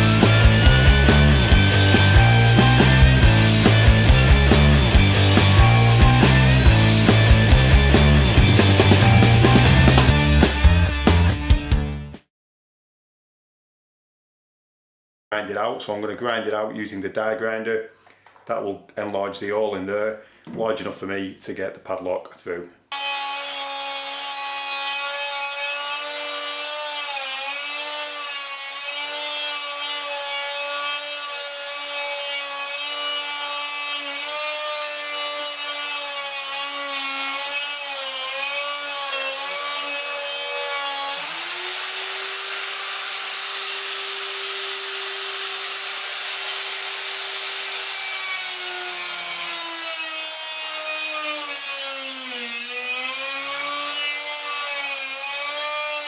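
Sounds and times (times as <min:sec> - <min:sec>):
die grinder whining: 0:00.0 - 0:11.0, 0:22.9 - 0:56.0.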